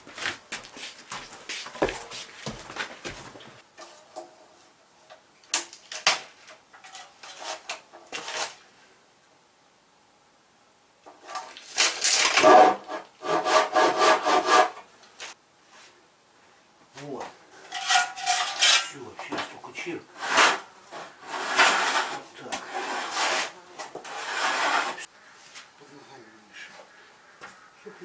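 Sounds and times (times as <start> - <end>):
handsaw cutting wood: 12.2 - 14.8, 20.2 - 25.1.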